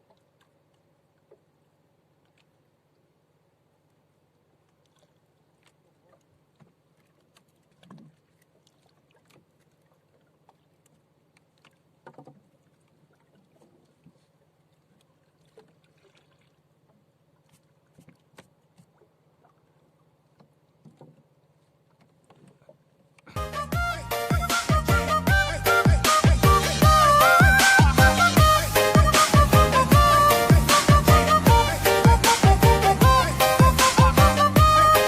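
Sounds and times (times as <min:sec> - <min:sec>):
taps and knocks on rowboat: 0:12.0 - 0:12.5, 0:20.3 - 0:23.4.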